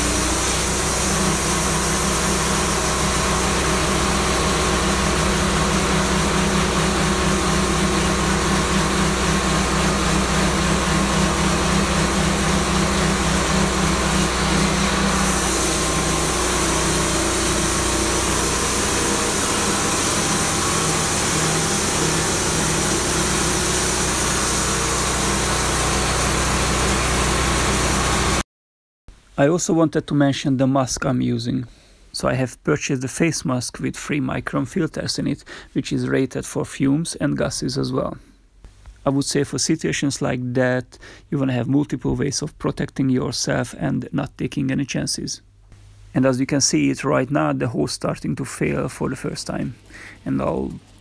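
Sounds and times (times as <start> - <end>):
sawmill engine running: 0.0 - 28.4, 48.7 - 51.0.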